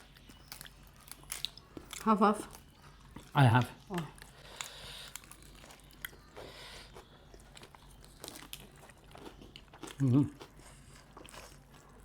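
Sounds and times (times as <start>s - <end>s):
chewing: 0.0s - 12.0s.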